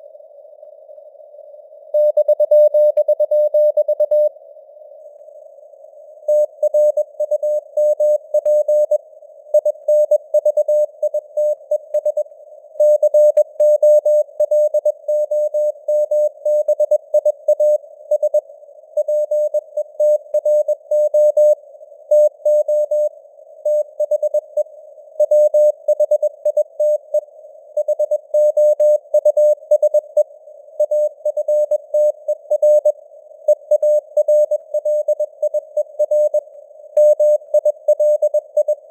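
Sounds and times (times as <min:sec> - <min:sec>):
morse code beeps: 0:02.0 - 0:04.3, 0:06.3 - 0:09.0, 0:37.0 - 0:38.8.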